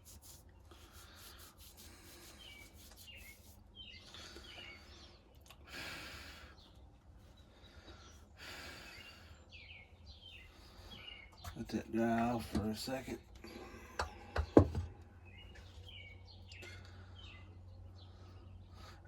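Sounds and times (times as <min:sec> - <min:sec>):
faint bird chirps: 0:00.2 - 0:05.4, 0:06.0 - 0:11.7, 0:15.2 - 0:19.0.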